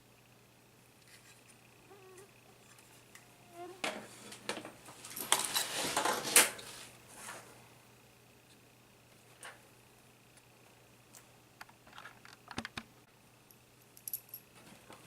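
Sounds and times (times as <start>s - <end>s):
faint squeaks: 1.8s - 3.8s.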